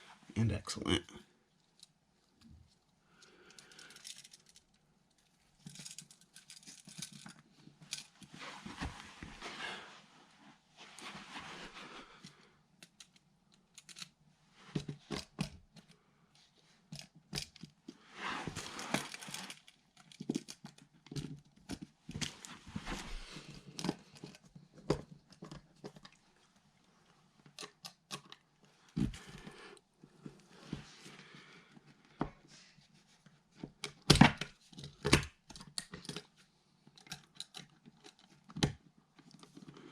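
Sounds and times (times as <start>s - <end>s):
rustling: 5.5s - 12.2s
tools clicking and knocking: 36.9s - 38.6s.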